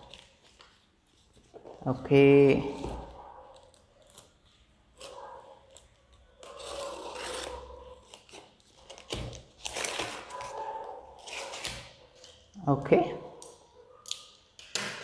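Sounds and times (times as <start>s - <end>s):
knife cutting packing tape: 2.6s - 10.6s, 11.2s - 12.5s.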